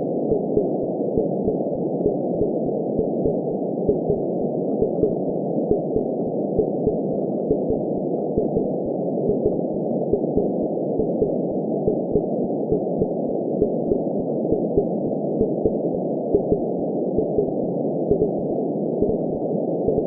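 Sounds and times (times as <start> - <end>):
muffled whooshing womb ambience: 0.0 - 20.0
heartbeat thumps: 9.3 - 18.3.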